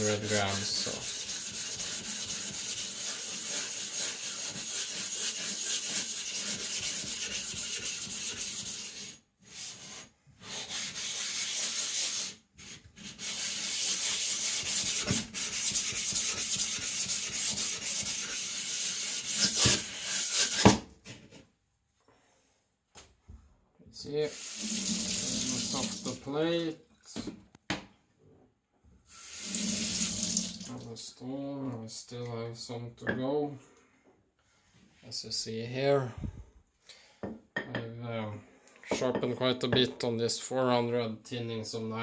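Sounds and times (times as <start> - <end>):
diamond plate scraping whetstone: 0.0 - 20.7.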